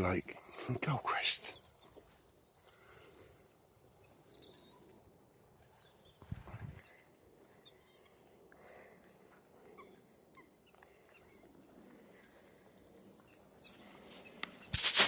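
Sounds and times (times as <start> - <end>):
lower bird chirps: 0.0 - 15.0
high thin bird calls: 13.2 - 15.0.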